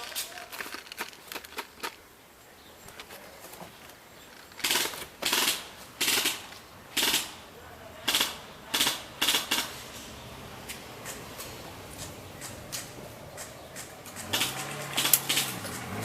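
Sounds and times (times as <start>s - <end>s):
airsoft gun firing bursts: 4.6s - 7.4s, 8.0s - 9.8s.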